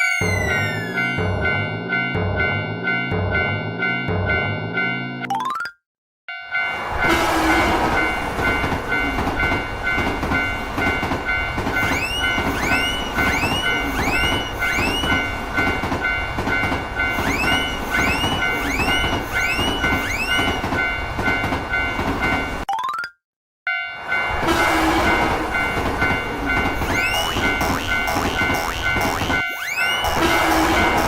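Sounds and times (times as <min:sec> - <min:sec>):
railroad crossing bell: 0:00.0 - 0:05.3, 0:06.3 - 0:22.6, 0:23.7 - 0:31.0
passing train rumble: 0:06.5 - 0:22.6, 0:24.0 - 0:31.0.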